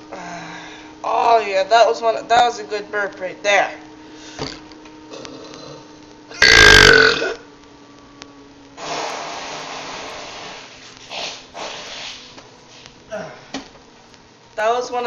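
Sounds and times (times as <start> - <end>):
person burping: 4.4 - 7.4
steady hiss: 7.7 - 14.5.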